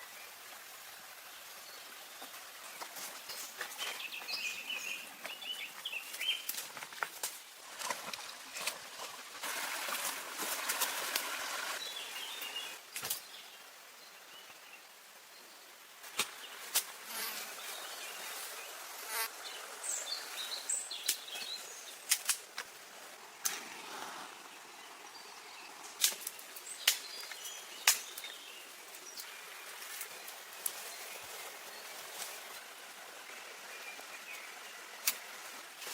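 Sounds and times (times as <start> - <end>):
small birds chirping: 0.1 - 6.6, 11.8 - 15.6, 16.3 - 22.2, 24.4 - 35.5
rushing hiss: 9.2 - 13.4
sharp knocks and snaps: 26.0 - 28.3.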